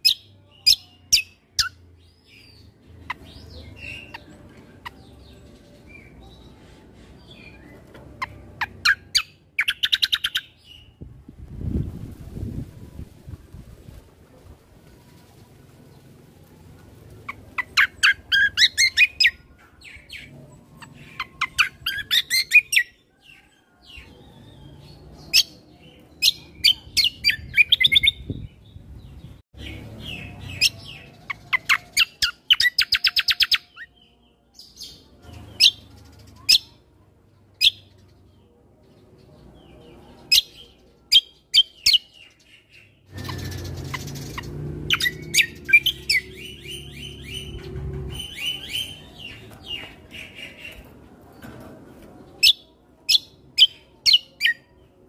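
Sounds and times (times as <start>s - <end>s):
songbird chirping and trilling: 0.0s - 55.0s
rustling noise: 11.0s - 17.3s.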